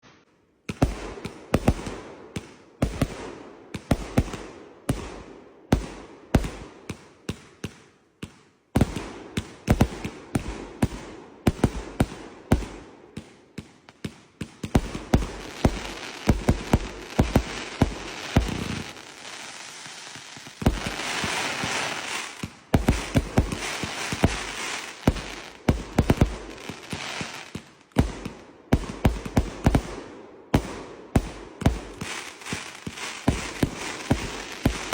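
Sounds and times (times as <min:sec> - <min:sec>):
fireworks banging: 0:00.7 - 0:34.9
fireworks crackling hiss: 0:14.6 - 0:27.9, 0:31.2 - 0:34.9.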